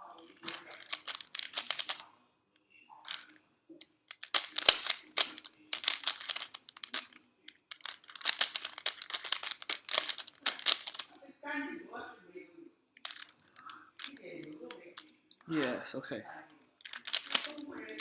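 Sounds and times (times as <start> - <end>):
plastic puzzle cube clicking: 0.3 - 2.0, 3.1 - 3.3, 4.1 - 11.1, 13.0 - 15.8, 16.8 - 18.0.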